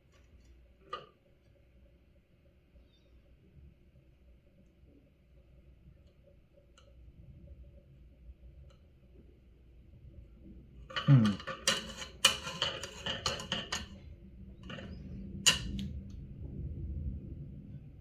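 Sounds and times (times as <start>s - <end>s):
small objects clattering on workbench: 10.9s - 14.0s.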